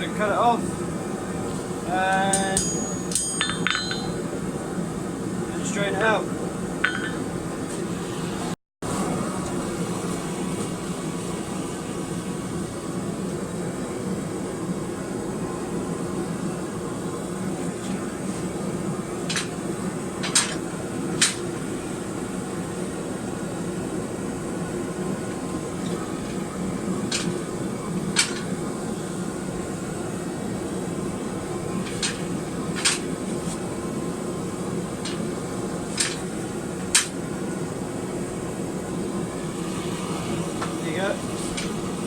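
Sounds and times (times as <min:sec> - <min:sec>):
fan-like hum: 0:00.0 - 0:42.0
hammer striking steel on anvil: 0:02.1 - 0:04.3, 0:06.8 - 0:07.2, 0:20.2 - 0:20.6.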